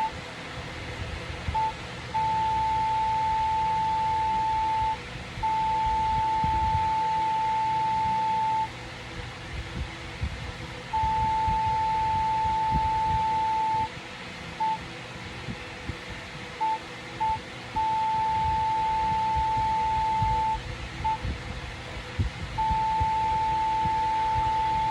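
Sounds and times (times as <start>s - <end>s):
morse code beeps: 1.6s - 8.7s, 11.0s - 13.9s, 16.6s - 21.2s, 22.6s - 24.9s.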